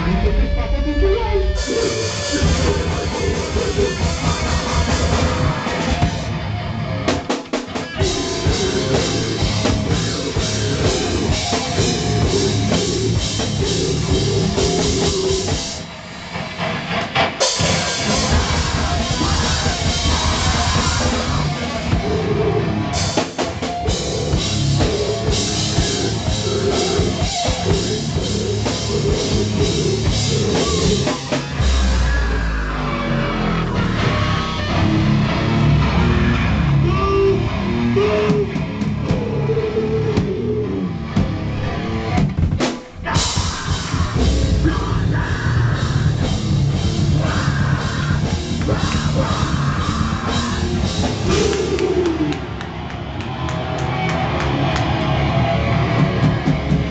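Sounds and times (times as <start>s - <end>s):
electric guitar: 0.0s - 56.9s
live rock band playing: 0.0s - 56.9s
pounding drum kit: 0.0s - 56.9s.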